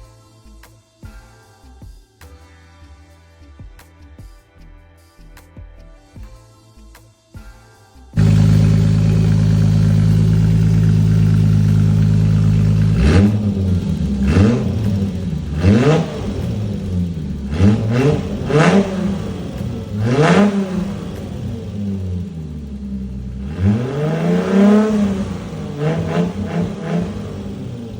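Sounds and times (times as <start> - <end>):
car engine idling and revving: 8.2 - 27.9.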